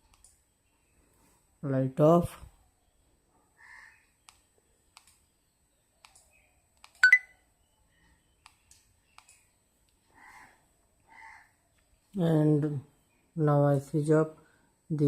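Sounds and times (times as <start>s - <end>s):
faint clicks: 0.0s - 0.4s, 4.0s - 5.3s, 6.0s - 7.0s, 8.0s - 10.2s.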